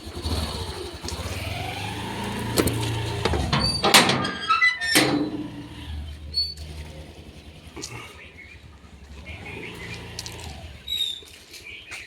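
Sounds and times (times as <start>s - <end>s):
metal gate clanking: 2.1s - 7.6s.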